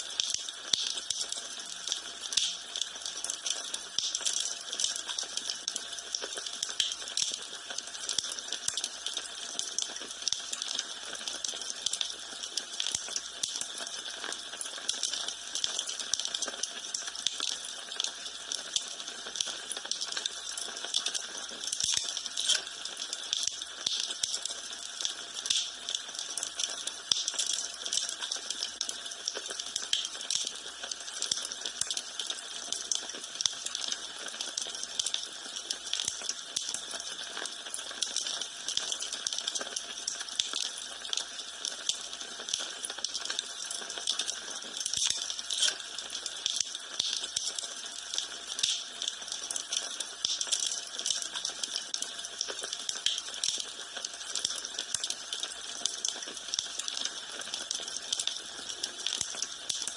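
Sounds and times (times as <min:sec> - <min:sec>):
wood fire crackling and popping: 0:00.1 - 0:59.9.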